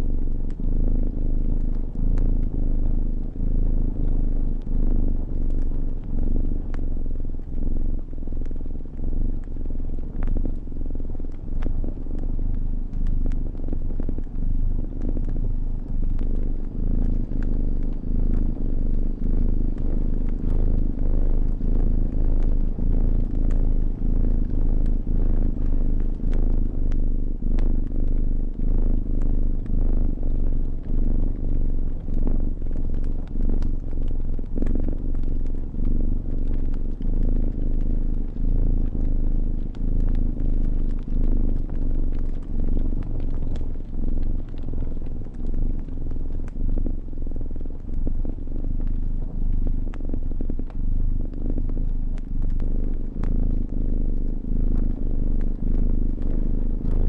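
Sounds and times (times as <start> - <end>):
cat purring: 0.0 - 57.0
wood fire crackling: 0.3 - 56.9.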